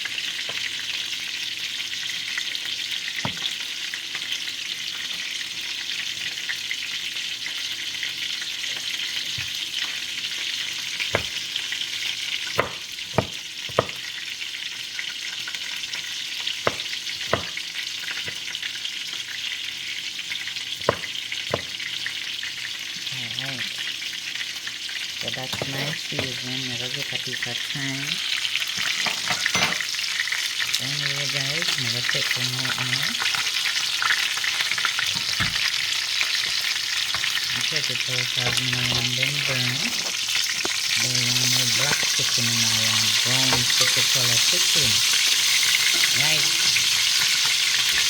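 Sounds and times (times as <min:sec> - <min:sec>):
chicken sizzling in hot oil: 0:00.0 - 0:48.0.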